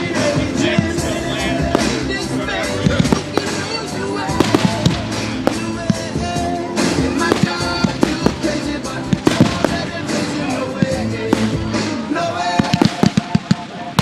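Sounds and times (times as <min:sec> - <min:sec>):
fireworks banging and cracking: 0:00.0 - 0:14.0
loud music: 0:00.5 - 0:10.5.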